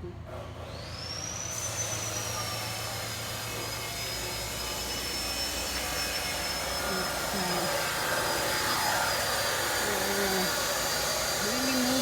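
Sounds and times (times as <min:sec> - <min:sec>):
power tool motor whining: 0:03.7 - 0:12.0.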